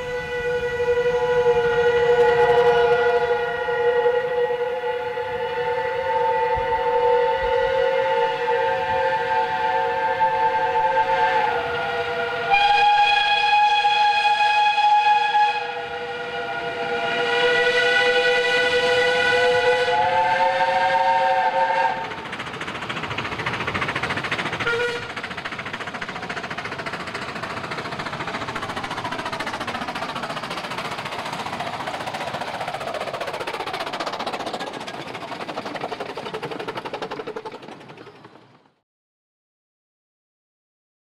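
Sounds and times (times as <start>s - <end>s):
steam locomotive chime whistle: 0.0s - 22.2s, 24.6s - 25.2s
steam train running: 0.0s - 38.8s.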